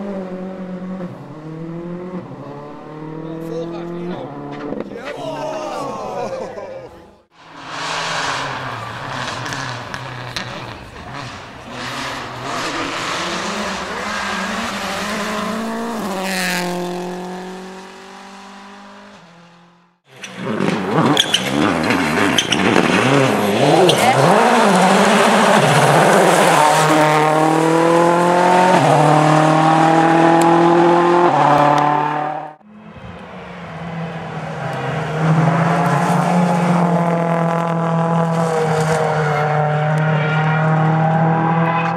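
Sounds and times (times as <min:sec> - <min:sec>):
rally car engines revving: 0:00.0 - 0:41.9
tyre squeal: 0:20.1 - 0:24.6.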